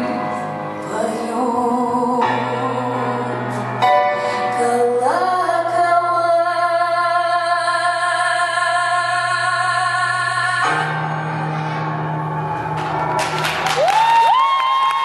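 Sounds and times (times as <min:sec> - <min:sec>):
woman singing: 0:00.0 - 0:11.1
backing music: 0:10.6 - 0:14.4.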